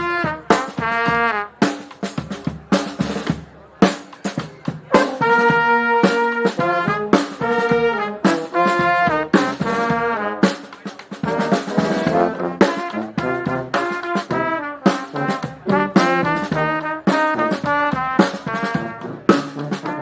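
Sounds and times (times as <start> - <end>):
brass band playing: 0.0 - 20.0
steady drum beats: 0.0 - 20.0
horns holding chords: 4.9 - 10.6, 11.2 - 20.0.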